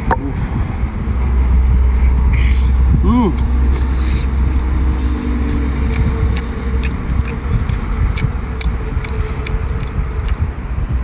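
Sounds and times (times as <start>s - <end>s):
low steady rumble: 0.0s - 11.0s
person chewing noisily: 1.6s - 10.6s
wet mouth clicks: 3.4s - 10.6s.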